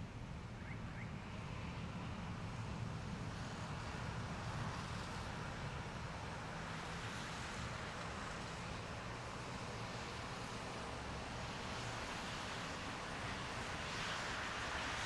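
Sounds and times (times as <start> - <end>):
heavy rain hiss: 5.2 - 15.0.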